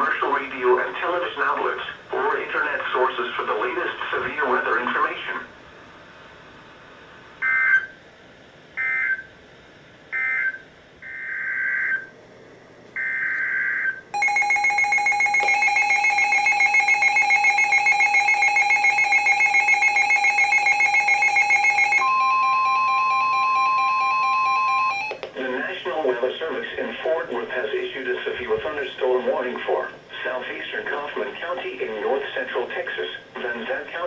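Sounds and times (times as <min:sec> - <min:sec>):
pulsing electronic alert tone: 0:14.2 - 0:25.1
steady alert tone: 0:14.2 - 0:25.1.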